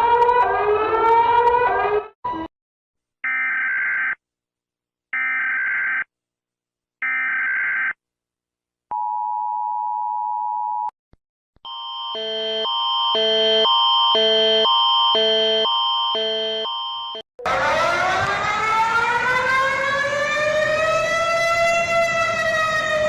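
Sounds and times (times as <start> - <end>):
alternating two-pitch alarm: 11.7 - 19.8.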